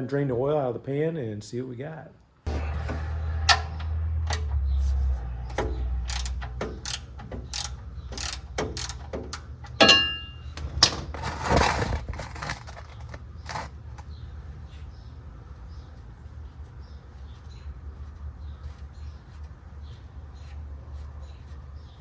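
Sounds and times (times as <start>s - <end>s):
hand ratchet clicking: 2.8s - 10.7s
metallic tool clink: 5.5s - 10.9s.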